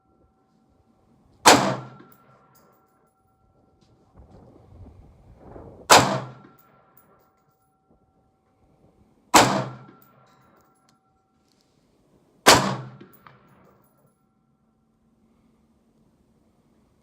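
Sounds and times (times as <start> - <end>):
rifle shots: 1.4 - 2.2, 5.9 - 6.6, 9.4 - 10.1, 12.5 - 13.4
wind rumbling on microphone: 3.9 - 5.9.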